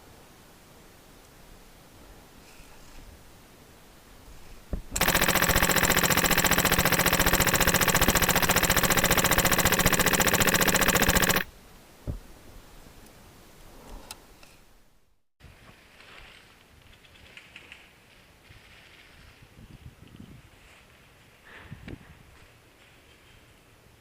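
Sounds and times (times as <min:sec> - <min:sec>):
sharp click: 0:04.9 - 0:11.5
airsoft gun full-auto burst: 0:05.0 - 0:11.5.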